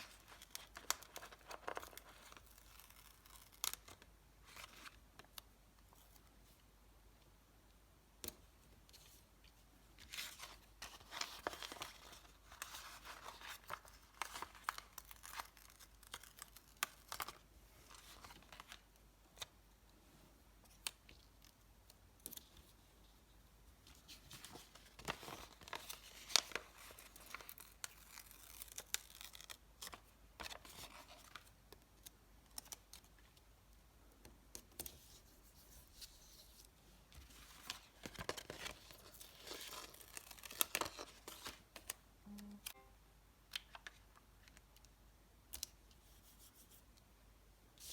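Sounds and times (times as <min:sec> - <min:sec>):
stickers peeling and crinkling: 0:25.0 - 0:31.4, 0:37.4 - 0:42.0.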